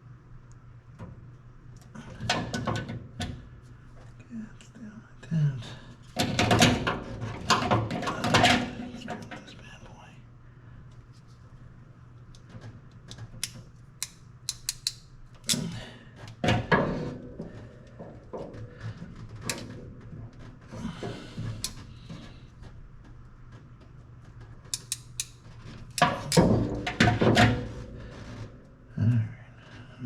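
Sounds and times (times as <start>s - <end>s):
faint steady hum: 0.0s - 30.0s
small clicks and taps: 12.2s - 15.6s, 23.8s - 26.4s.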